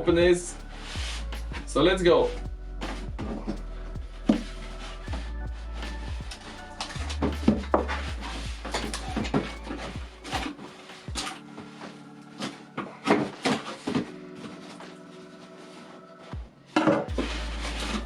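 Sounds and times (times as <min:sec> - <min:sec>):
quiet background music: 0:00.0 - 0:18.0.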